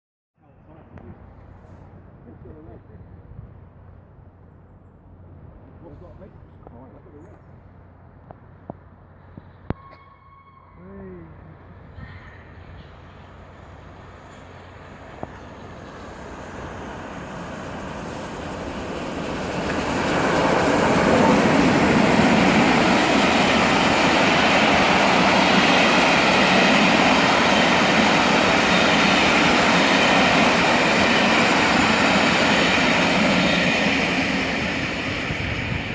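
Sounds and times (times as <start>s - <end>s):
train wheels rumbling on rails: 8.2s - 35.9s.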